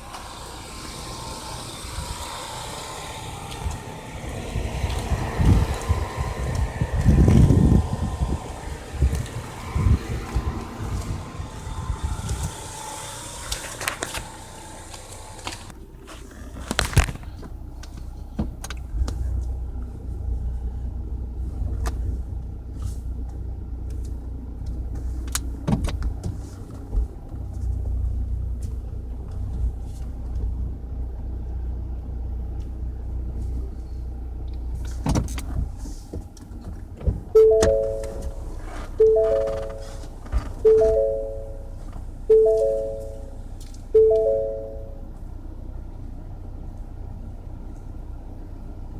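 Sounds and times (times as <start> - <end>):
hiss: 0.0 - 15.7
car engine rumbling: 0.0 - 48.9
chime-like notes: 37.4 - 40.1, 40.7 - 41.7, 42.3 - 43.4, 44.0 - 45.1.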